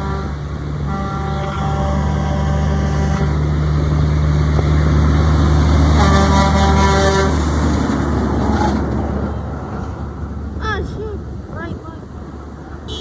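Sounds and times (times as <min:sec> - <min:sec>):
truck air horn: 0:00.0 - 0:03.5, 0:05.9 - 0:07.7
truck engine droning: 0:00.0 - 0:13.0.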